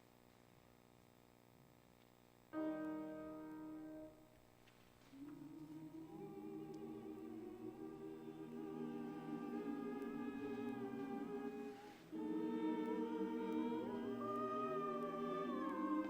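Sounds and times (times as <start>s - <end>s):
held keyboard chord: 2.6s - 4.4s
choir humming: 5.0s - 16.0s.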